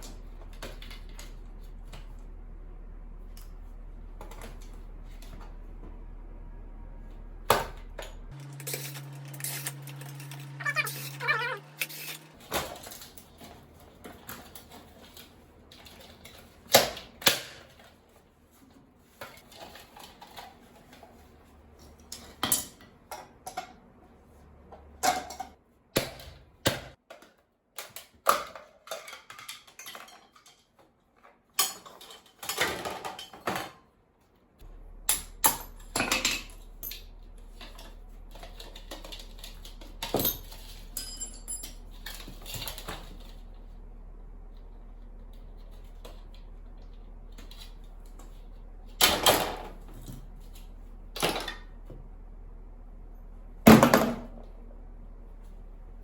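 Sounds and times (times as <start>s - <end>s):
scrap metal and plastic clattering: 8.0s - 23.8s, 27.0s - 34.0s, 35.4s - 43.7s.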